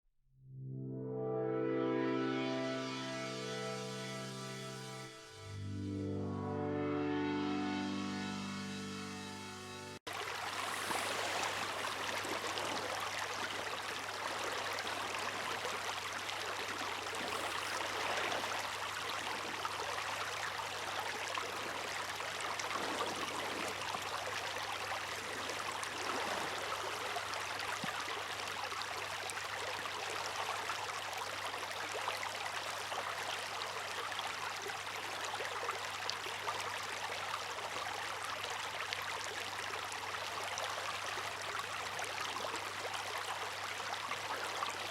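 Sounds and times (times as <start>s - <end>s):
seawater splashing at shore: 10.1s - 20.0s.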